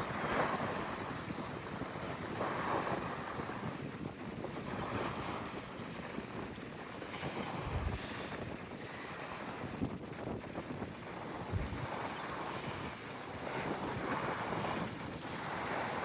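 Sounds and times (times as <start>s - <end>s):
wind buffeting microphone: 0.0s - 16.0s
sea water rushing: 6.8s - 9.6s
low gusts thumping: 7.5s - 8.6s.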